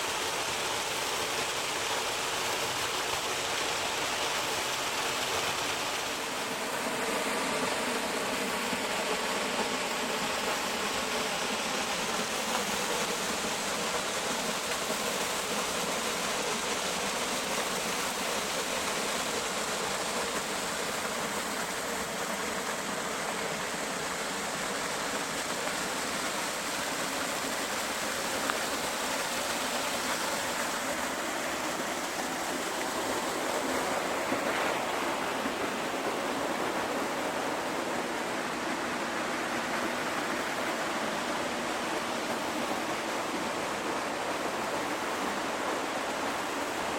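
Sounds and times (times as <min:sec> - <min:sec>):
waterfall pouring: 0:02.2 - 0:39.2.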